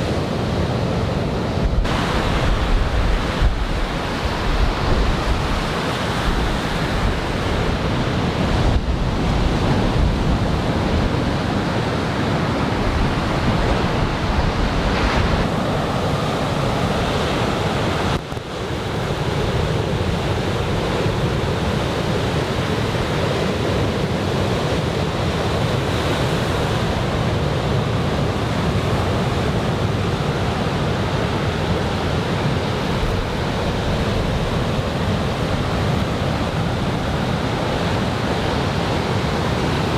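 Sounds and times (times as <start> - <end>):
surf waves breaking: 0.0 - 39.9
wind on microphone: 0.0 - 39.9.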